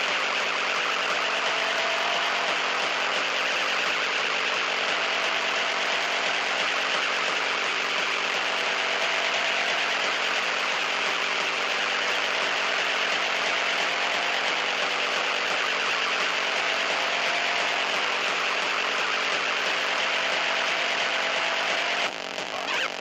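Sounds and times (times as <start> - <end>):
distorted noise music: 0.0 - 23.0.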